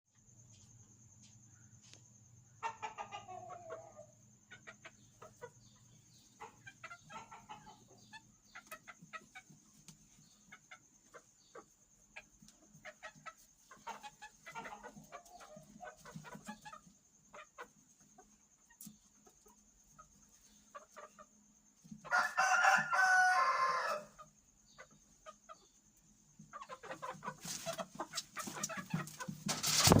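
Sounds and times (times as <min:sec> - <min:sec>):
chickens clucking: 0:02.5 - 0:30.0
rooster crowing: 0:22.1 - 0:24.2.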